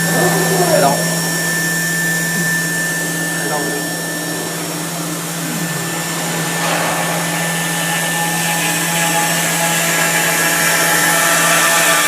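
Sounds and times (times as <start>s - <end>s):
router spindle hum: 0.0s - 12.0s.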